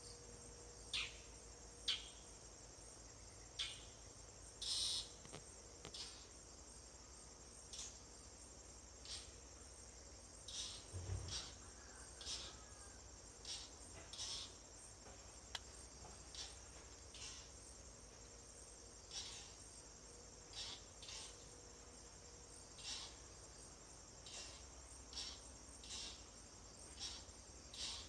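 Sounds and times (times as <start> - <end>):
crickets humming: 0.0 - 28.0
insect chirps: 0.0 - 28.0.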